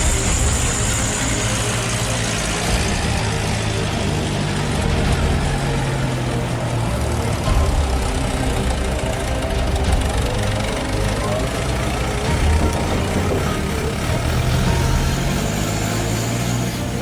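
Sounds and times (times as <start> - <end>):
truck engine running: 0.0 - 17.0.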